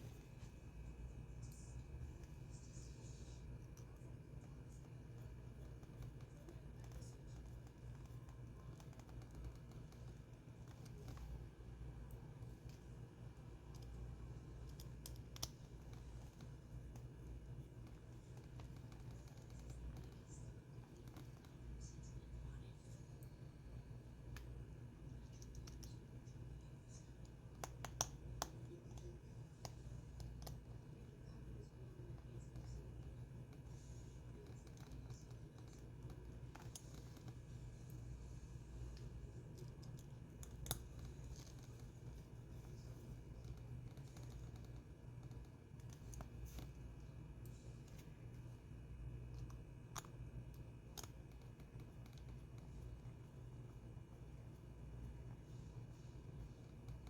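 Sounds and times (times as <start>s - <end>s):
faint scratching and clicks: 0.0s - 57.0s
steady low hum: 0.0s - 57.0s.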